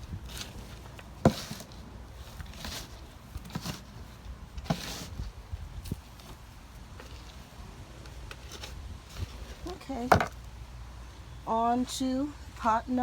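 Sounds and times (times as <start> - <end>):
soil rustling: 0.0 - 10.8
potatoes knocking: 0.2 - 5.3.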